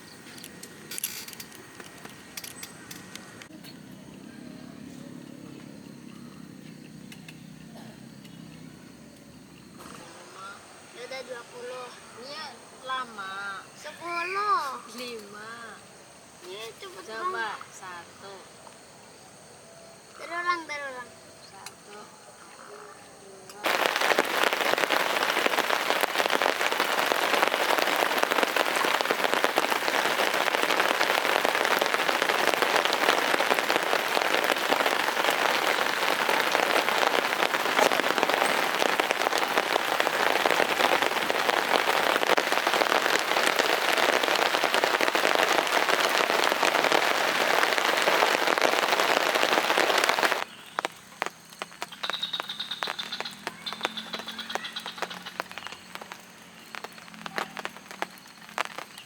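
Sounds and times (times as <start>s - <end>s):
heavy rain falling: 9.8s - 14.7s, 23.6s - 59.0s.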